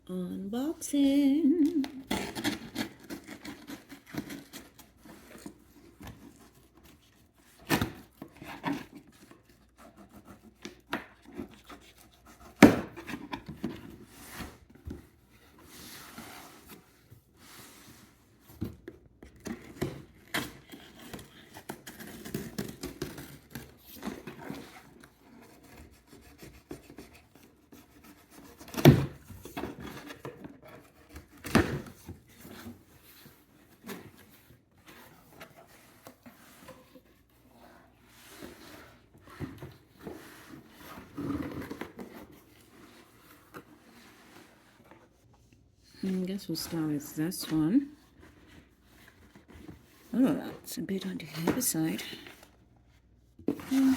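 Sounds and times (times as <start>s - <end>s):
cardboard box scraping and rustling: 2.0s - 45.2s.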